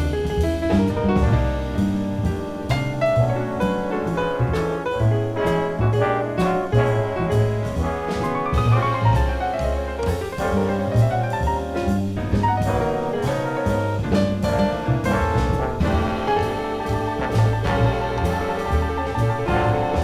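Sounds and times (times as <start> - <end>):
drums: 0.0 - 20.0
piano: 0.0 - 20.0
walking double bass: 0.0 - 20.0
brass and saxophone lines: 15.1 - 20.0.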